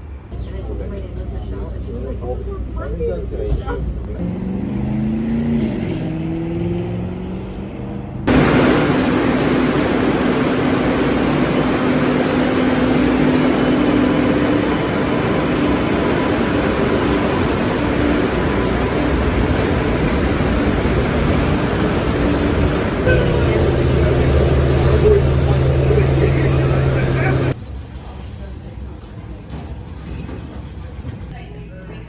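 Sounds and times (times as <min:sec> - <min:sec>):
steady rushing noise: 0:08.2 - 0:27.6
constant low hum: 0:08.3 - 0:27.6
vehicle engine running: 0:08.3 - 0:27.6.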